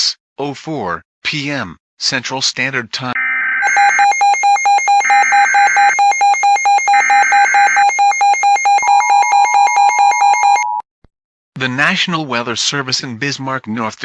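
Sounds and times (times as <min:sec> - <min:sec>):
pulsing high alert beep: 0:03.2 - 0:10.8.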